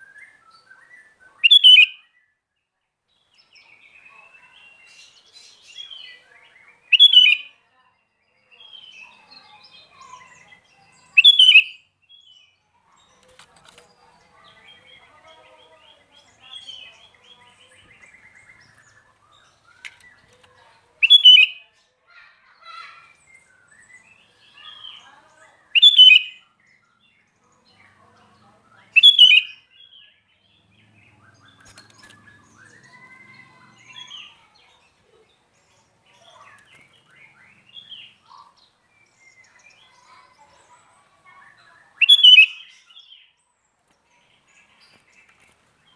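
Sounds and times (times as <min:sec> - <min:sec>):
bird chattering and warbling: 0:00.0 - 0:02.0, 0:03.4 - 0:07.6, 0:08.5 - 0:43.4
loud short bird calls: 0:42.0 - 0:42.8.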